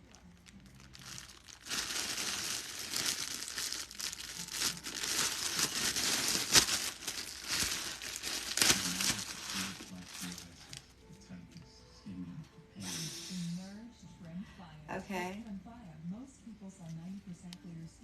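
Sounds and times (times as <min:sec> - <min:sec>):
packaging crinkling and rustling: 0:00.1 - 0:10.9.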